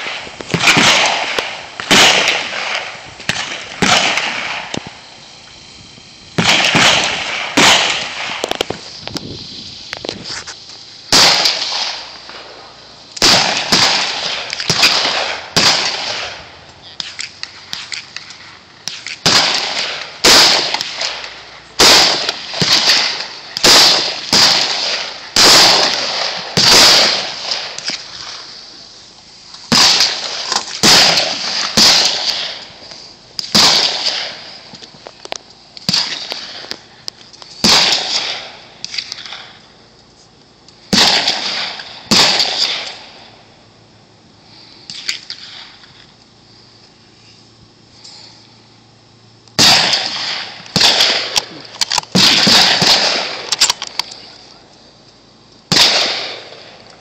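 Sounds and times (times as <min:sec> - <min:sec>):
gunshots echoing: 0:00.0 - 0:05.4, 0:06.4 - 0:08.8, 0:11.1 - 0:28.4, 0:29.7 - 0:32.7, 0:33.4 - 0:34.8, 0:35.9 - 0:36.8, 0:37.6 - 0:39.6, 0:40.9 - 0:43.2, 0:49.6 - 0:53.8, 0:55.7 - 0:56.8.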